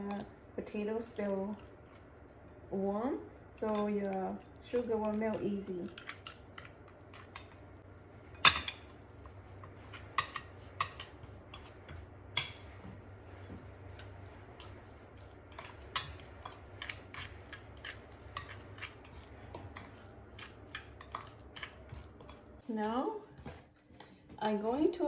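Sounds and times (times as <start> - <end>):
utensil clinking against bowl: 13.5 - 24.1.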